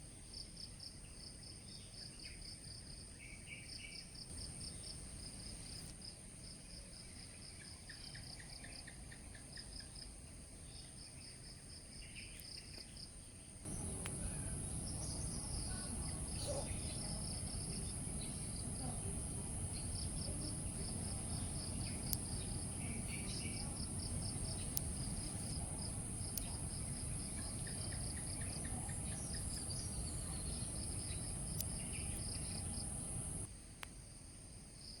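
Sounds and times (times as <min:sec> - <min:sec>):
high-pitched insect drone: 0:13.7 - 0:33.5
insects chirping in pulses: 0:13.7 - 0:33.5
low rumbling noise: 0:13.7 - 0:33.5.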